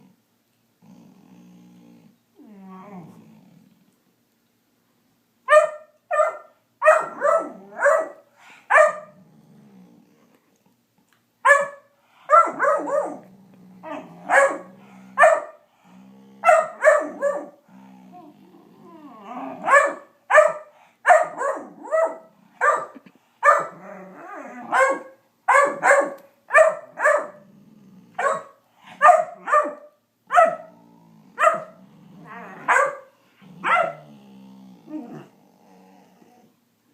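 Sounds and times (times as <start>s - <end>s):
puppy barking: 5.5s - 9.2s, 11.4s - 13.2s, 14.2s - 15.6s, 16.4s - 17.6s, 19.6s - 23.8s, 24.6s - 27.4s, 28.2s - 30.7s, 31.4s - 31.8s, 32.6s - 34.0s.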